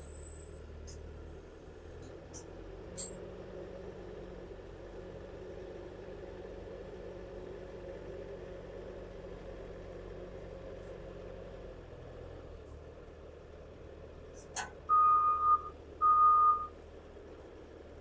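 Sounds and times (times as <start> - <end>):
vehicle engine idling: 0.0 - 18.0
reversing alarm beeps: 14.9 - 16.7.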